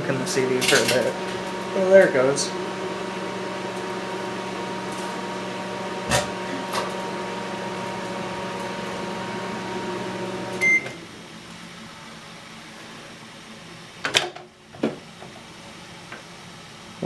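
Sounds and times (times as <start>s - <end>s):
microwave oven hum: 0.0s - 11.6s
microwave beep: 10.4s - 11.0s.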